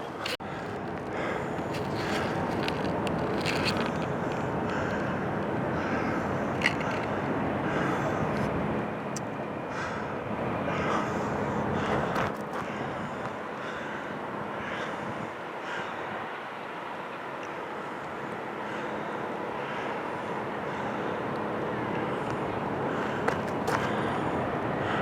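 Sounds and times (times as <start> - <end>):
footsteps on a road: 0.0 - 5.2, 21.9 - 24.2
distant motor traffic: 0.0 - 25.0.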